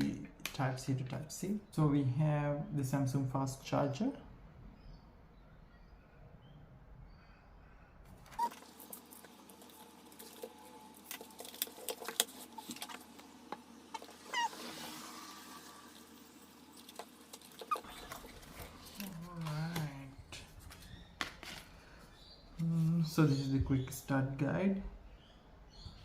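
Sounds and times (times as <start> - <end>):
cardboard and plastic rustling: 8.2 - 14.6, 16.7 - 21.8.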